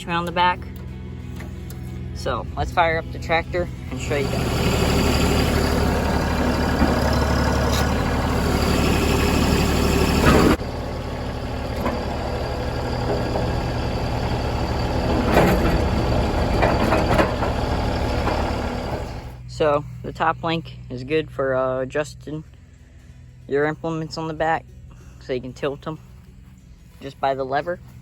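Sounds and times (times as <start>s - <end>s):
diesel tractor engine running: 0.0s - 20.7s.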